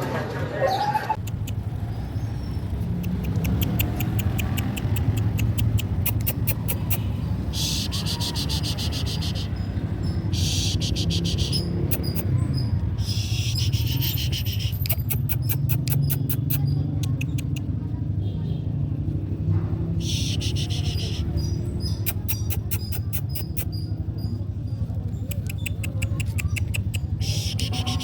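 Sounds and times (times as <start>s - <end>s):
insects ticking: 1.2s - 12.4s.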